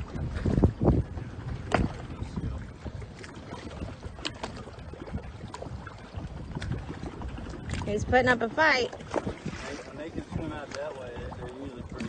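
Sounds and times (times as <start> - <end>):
knocks and thumps on boat: 0.0 - 12.0.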